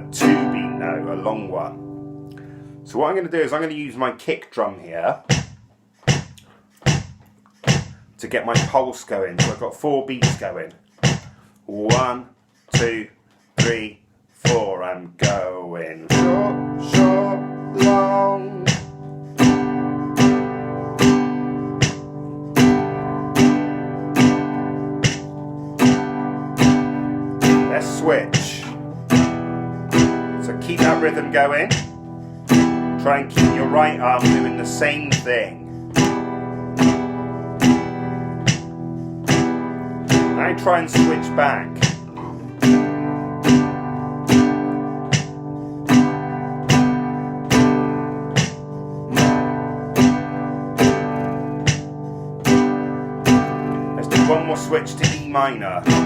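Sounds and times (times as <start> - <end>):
acoustic guitar strumming: 0.0 - 4.2, 4.8 - 56.0
kick drum pulse: 5.3 - 8.8, 10.2 - 12.1, 12.7 - 13.0, 16.1 - 17.2, 17.8 - 27.6, 31.7 - 32.8, 35.2 - 40.4, 41.7 - 53.6.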